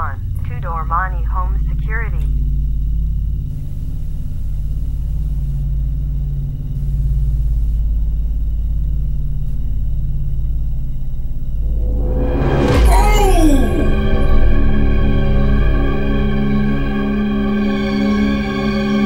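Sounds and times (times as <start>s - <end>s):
faint steady tones: 0.0s - 12.9s
low rumbling drone: 0.0s - 19.0s.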